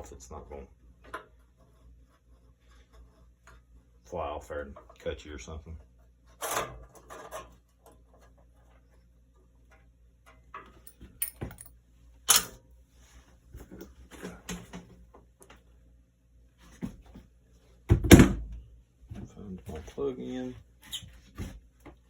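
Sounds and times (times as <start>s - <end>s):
metal parts clinking and knocking: 10.6s - 12.6s.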